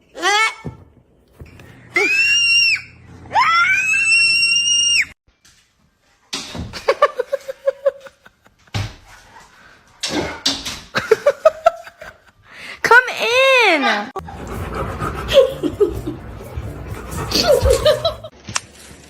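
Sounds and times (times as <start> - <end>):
high-pitched scream: 1.9 - 5.2.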